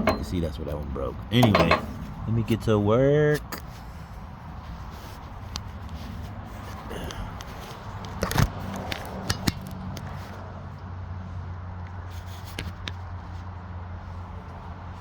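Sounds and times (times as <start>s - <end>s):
metal tools clinking: 0.0s - 0.6s, 1.3s - 2.2s.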